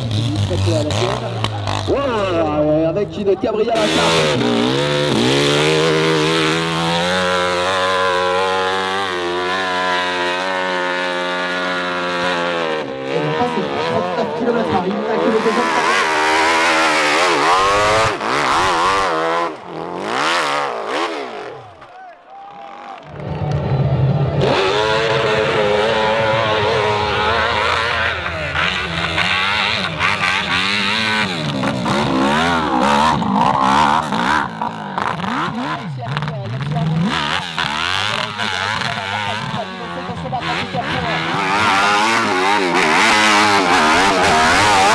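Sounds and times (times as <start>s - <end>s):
motorcycle engine revving: 0.0s - 21.9s, 23.1s - 44.9s.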